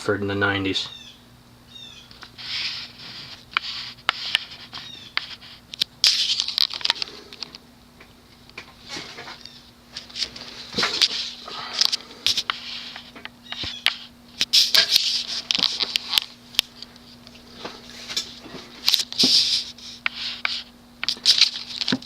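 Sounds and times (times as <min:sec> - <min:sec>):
ceiling fan motor humming: 0:00.0 - 0:22.0.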